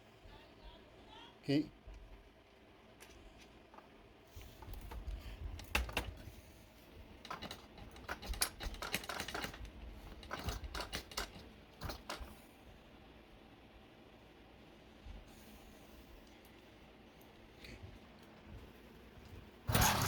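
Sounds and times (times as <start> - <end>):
small metal parts clicking: 7.2 - 12.4.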